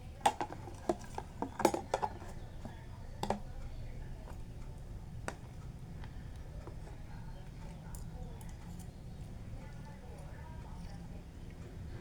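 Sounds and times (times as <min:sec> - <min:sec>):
cutlery clinking on a plate: 0:00.3 - 0:02.4.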